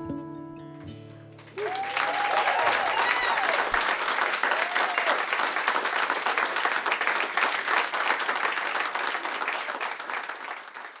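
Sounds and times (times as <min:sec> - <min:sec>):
audience applauding: 0:01.4 - 0:11.0.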